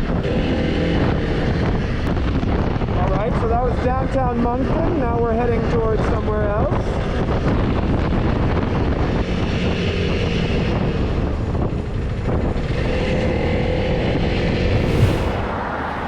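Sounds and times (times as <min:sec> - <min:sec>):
road and wind noise: 0:00.0 - 0:16.0.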